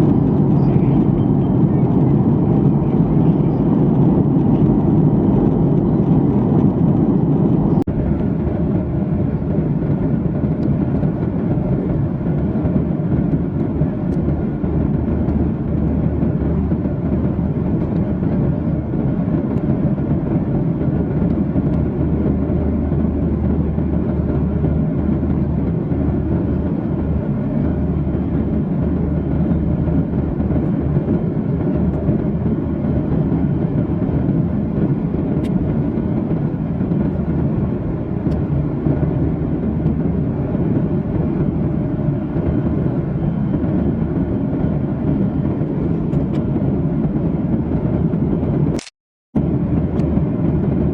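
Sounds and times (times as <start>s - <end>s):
airplane cabin drone: 0.0s - 50.9s.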